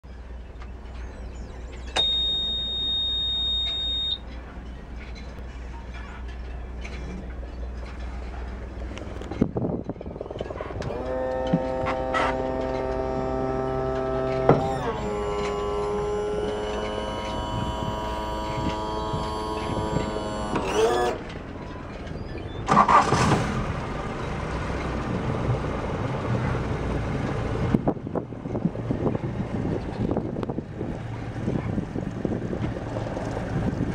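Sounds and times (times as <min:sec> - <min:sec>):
boat engine starting and running: 0:00.0 - 0:33.9
warning buzzer steady high tone: 0:11.0 - 0:20.6.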